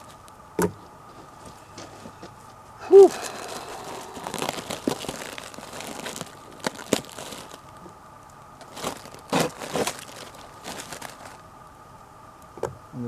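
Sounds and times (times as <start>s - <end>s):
packaging tearing and crumpling: 3.0s - 7.8s, 8.6s - 11.4s.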